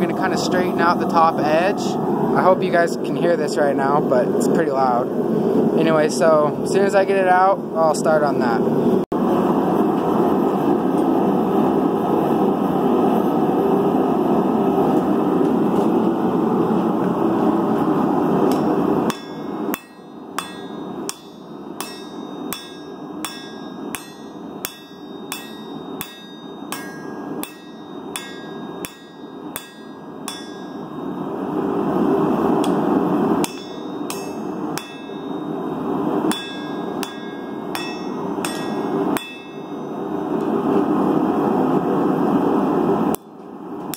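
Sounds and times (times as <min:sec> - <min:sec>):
hammer ringing on anvil: 0:18.5 - 0:31.4, 0:33.4 - 0:40.3.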